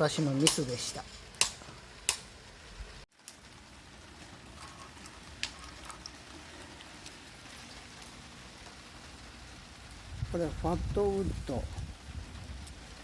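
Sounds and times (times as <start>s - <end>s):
steady rain falling: 0.0s - 13.0s
raindrops ticking: 0.4s - 10.5s.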